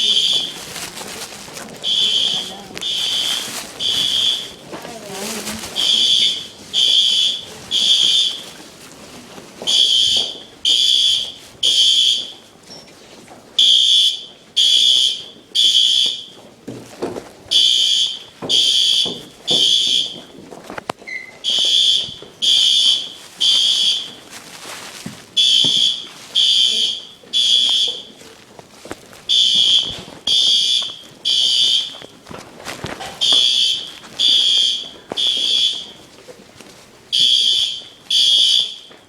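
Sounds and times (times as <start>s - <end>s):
fire alarm high-pitched blasts: 0.0s - 0.7s, 1.8s - 4.7s, 5.4s - 8.6s, 9.7s - 12.4s, 13.6s - 16.4s, 17.5s - 20.3s, 21.1s - 24.2s, 25.4s - 28.2s, 29.3s - 32.1s, 33.2s - 36.0s, 37.1s - 39.0s.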